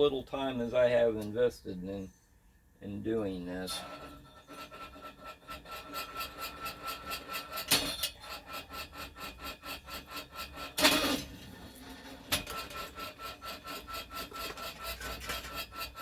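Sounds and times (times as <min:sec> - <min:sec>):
rhythmic scraping: 0:03.4 - 0:16.0
loud rasping bursts: 0:03.6 - 0:11.3, 0:12.3 - 0:16.0
wire stripper motor whining: 0:03.6 - 0:16.0.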